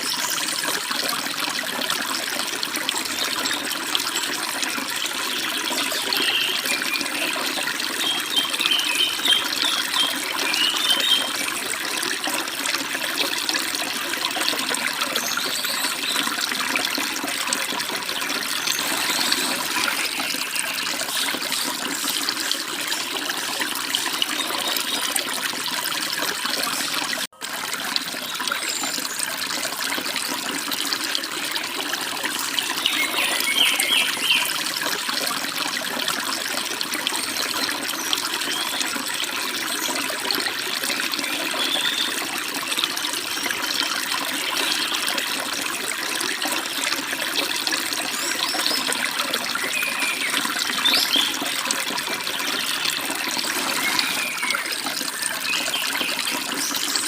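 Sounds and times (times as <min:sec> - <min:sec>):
stream water running and splashing: 0:00.0 - 0:57.0
bird chirps: 0:32.8 - 0:34.4.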